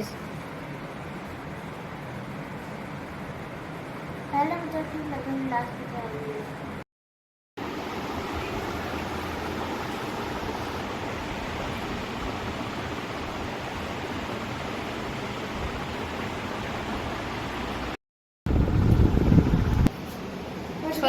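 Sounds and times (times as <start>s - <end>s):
steady rushing noise: 7.6s - 21.0s.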